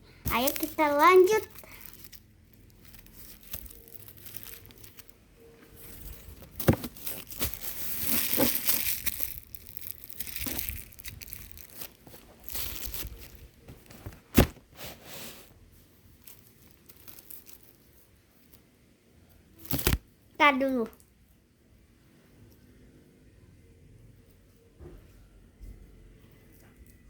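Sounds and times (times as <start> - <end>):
plastic wrapper crinkling and tearing: 0.3 - 14.5, 16.2 - 18.6, 19.6 - 20.0.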